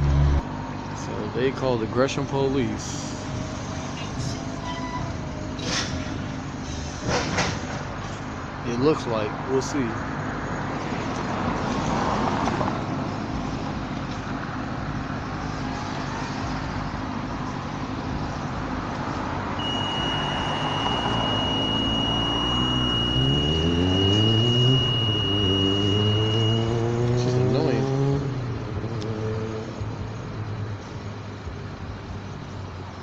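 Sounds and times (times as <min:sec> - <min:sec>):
car engine accelerating: 0:00.0 - 0:01.1, 0:10.7 - 0:32.9
road traffic: 0:00.0 - 0:33.0
high-pitched whine: 0:16.8 - 0:27.8.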